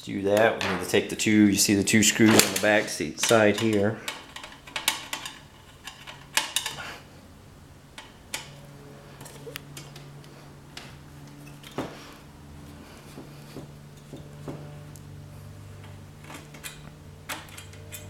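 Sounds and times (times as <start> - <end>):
printer parts clicking and clattering: 2.1 - 6.8, 15.8 - 18.0.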